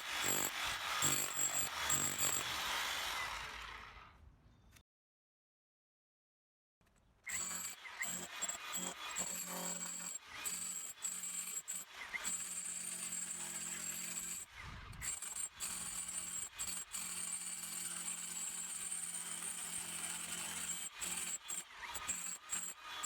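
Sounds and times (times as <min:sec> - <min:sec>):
rotary hammer chiseling: 0:00.0 - 0:03.2, 0:15.0 - 0:23.0.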